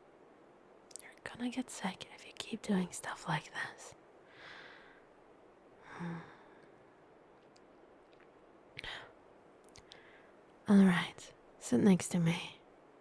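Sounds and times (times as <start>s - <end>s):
woman sighing: 5.8s - 6.6s.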